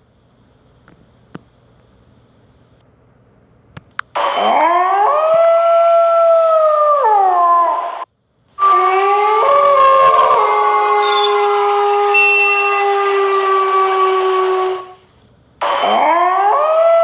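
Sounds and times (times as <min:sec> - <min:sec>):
dog howling: 0:08.6 - 0:15.0.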